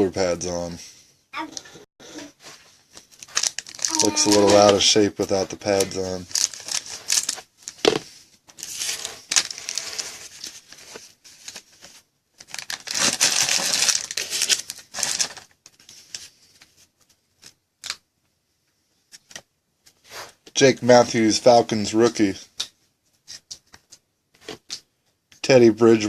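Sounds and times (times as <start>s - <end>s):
foil wrapper tearing and crinkling: 3.0s - 5.0s, 5.7s - 8.0s, 8.6s - 10.8s, 12.4s - 15.6s.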